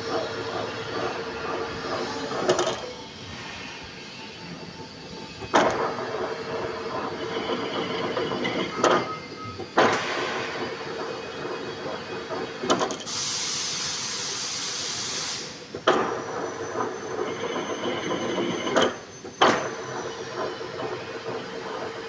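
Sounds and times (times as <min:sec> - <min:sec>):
lathe humming: 0:00.0 - 0:13.0, 0:15.7 - 0:22.0
sharp metallic clicks and knocks: 0:05.4 - 0:13.1
loud hiss: 0:13.1 - 0:15.7.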